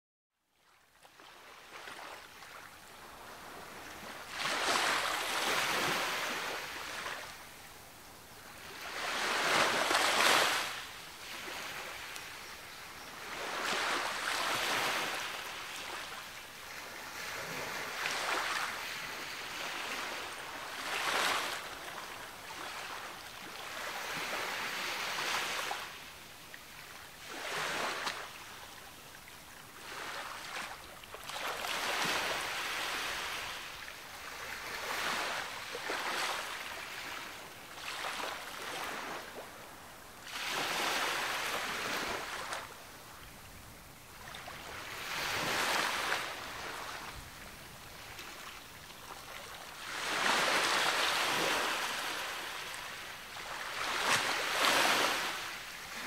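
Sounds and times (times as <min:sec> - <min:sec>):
ocean waves breaking: 0:01.7 - 0:07.3, 0:08.6 - 0:12.3, 0:13.2 - 0:25.9, 0:40.3 - 0:42.7, 0:44.2 - 0:47.2, 0:48.0 - 0:56.0.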